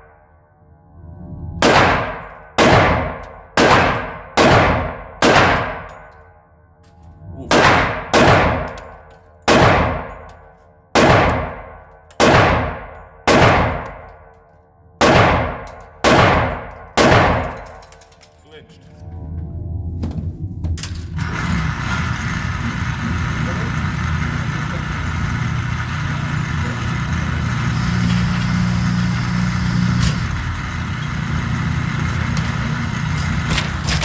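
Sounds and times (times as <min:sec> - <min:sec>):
pistol shots with ringing tail: 0:01.6 - 0:06.3, 0:07.5 - 0:14.3, 0:15.0 - 0:18.0.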